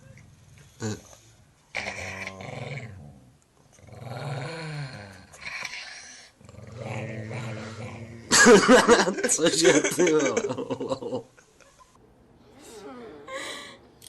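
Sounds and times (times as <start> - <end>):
dog growling: 0.4 - 8.5.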